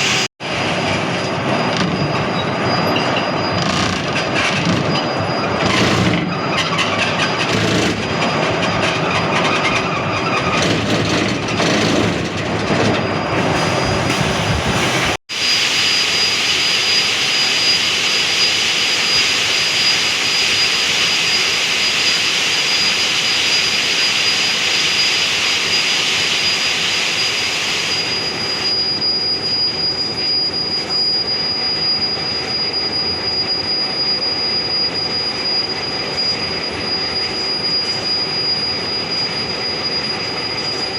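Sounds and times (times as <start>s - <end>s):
high steady whine: 0.0s - 9.1s, 13.0s - 40.9s
concrete mixer grinding: 3.6s - 15.2s.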